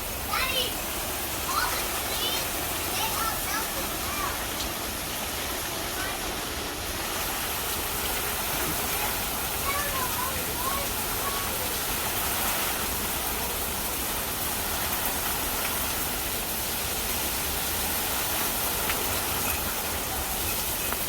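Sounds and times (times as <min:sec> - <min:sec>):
heavy rain falling: 0:00.0 - 0:21.0.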